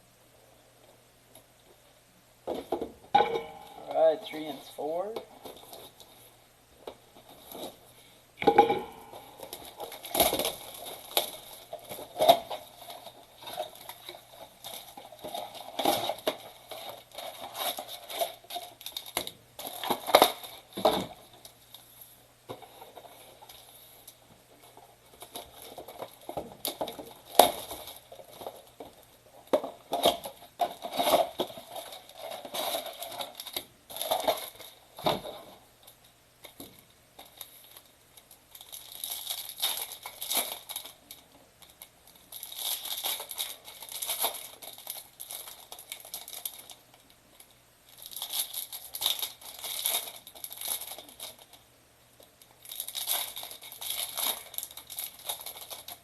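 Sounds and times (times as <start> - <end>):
faint steady hum: 0.0 - 56.0
foil wrappers tearing and crinkling: 9.1 - 21.6, 24.6 - 35.5, 37.2 - 47.0, 47.9 - 51.6, 52.4 - 56.0.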